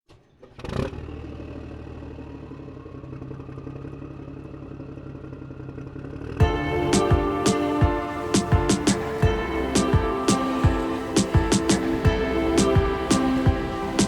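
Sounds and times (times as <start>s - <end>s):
music: 6.4s - 14.0s.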